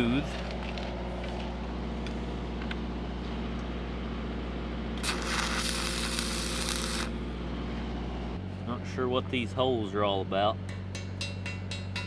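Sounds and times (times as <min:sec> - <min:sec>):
welding arc crackle: 0:05.0 - 0:07.2
welding machine engine running: 0:05.0 - 0:07.3.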